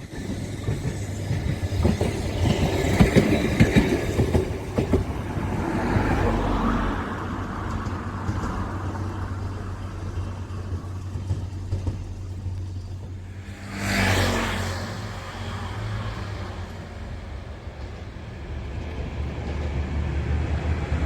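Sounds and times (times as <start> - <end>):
train rumbling past: 0.0 - 21.0
vehicle passing close: 13.2 - 17.0.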